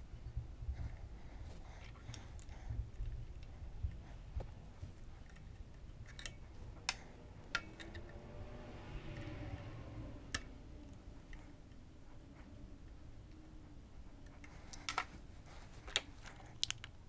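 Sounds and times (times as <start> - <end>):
faint low hum: 0.0 - 17.0
hand tools clicking and tapping: 0.8 - 8.4, 12.8 - 17.0.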